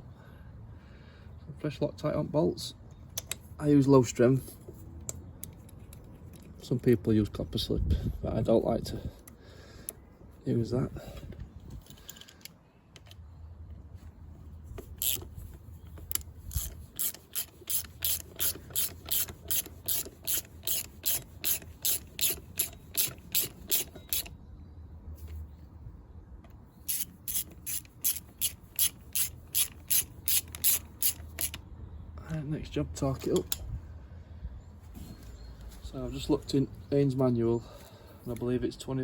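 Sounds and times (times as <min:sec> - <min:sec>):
hand ratchet clicking: 0:15.0 - 0:15.3, 0:16.0 - 0:24.3, 0:26.9 - 0:31.6.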